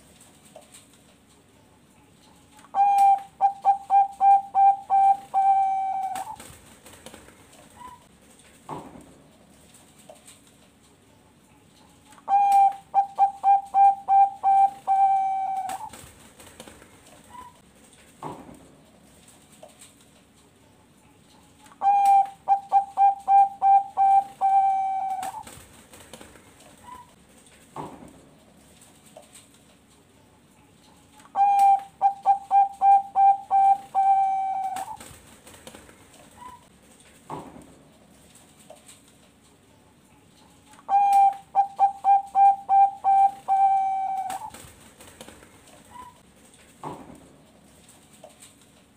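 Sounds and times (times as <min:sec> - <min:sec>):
dove cooing: 0:02.7 - 0:06.5, 0:12.3 - 0:16.0, 0:21.8 - 0:25.5, 0:31.3 - 0:35.0, 0:40.9 - 0:44.6.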